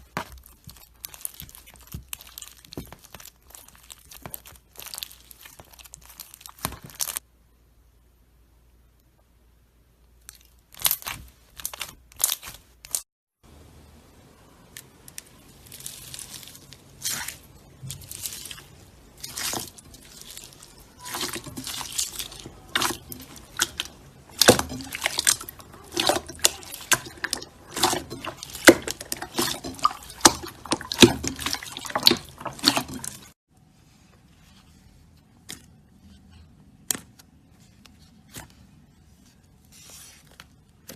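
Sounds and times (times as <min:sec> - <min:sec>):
slime squelching by hand: 0:00.0 - 0:07.2, 0:14.9 - 0:33.4.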